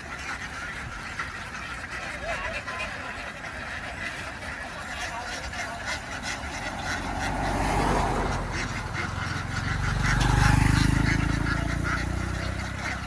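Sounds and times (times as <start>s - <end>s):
ducks quacking: 0.0s - 13.0s
vehicle engine running low: 5.5s - 13.0s.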